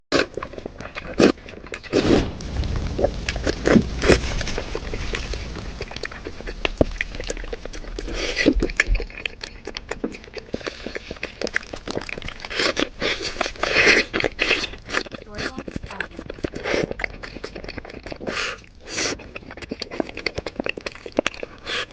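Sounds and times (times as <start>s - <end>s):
person chewing meat: 0.1s - 2.2s, 3.4s - 21.9s
voiced hums: 15.1s - 16.3s.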